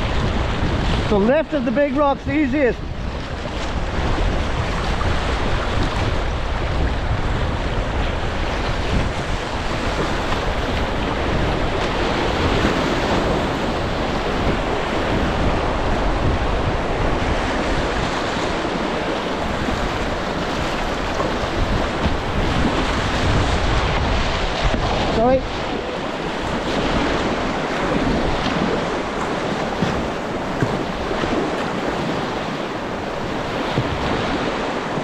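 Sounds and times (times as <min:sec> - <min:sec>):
wind buffeting microphone: 0:00.0 - 0:35.0
river rushing over rocks: 0:18.2 - 0:35.0.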